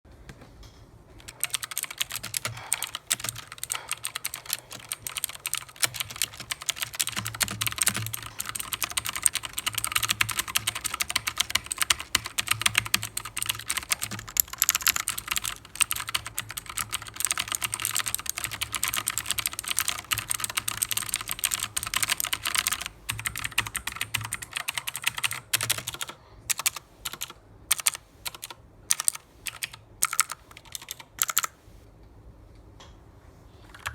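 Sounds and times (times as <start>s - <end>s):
mechanical keyboard typing: 1.2s - 31.6s, 33.7s - 33.9s.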